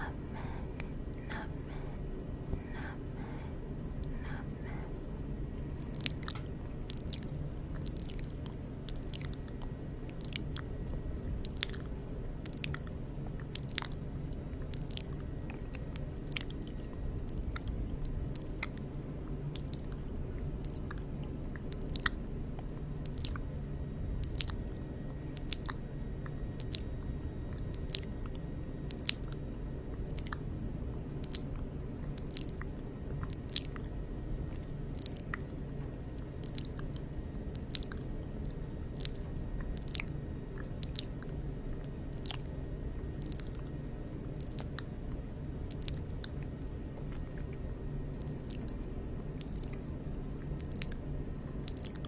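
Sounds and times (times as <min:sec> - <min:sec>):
steady low rumble: 0:00.0 - 0:52.0
wet mouth clicks and smacks: 0:05.8 - 0:10.7, 0:11.4 - 0:14.0, 0:14.7 - 0:18.9, 0:19.6 - 0:20.0, 0:20.6 - 0:22.2, 0:23.0 - 0:23.5, 0:24.2 - 0:24.6, 0:25.4 - 0:25.8, 0:26.6 - 0:30.5, 0:31.2 - 0:33.9, 0:34.5 - 0:35.5, 0:36.4 - 0:38.1, 0:38.9 - 0:41.3, 0:42.1 - 0:42.5, 0:43.2 - 0:43.7, 0:44.4 - 0:44.9, 0:45.7 - 0:48.8, 0:49.4 - 0:51.0, 0:51.6 - 0:52.0.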